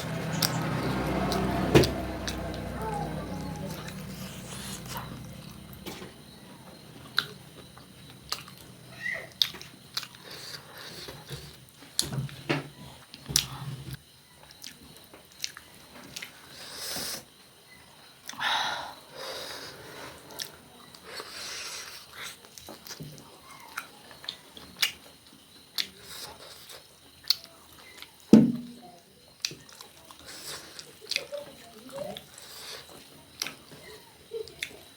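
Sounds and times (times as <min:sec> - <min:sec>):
chewing and biting food: 0:03.4 - 0:06.2, 0:07.0 - 0:08.7.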